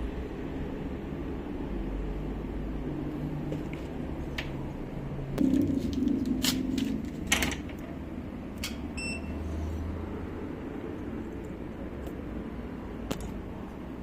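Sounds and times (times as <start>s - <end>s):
steady low hum: 0.0s - 14.0s
short electronic beep: 9.0s - 9.4s.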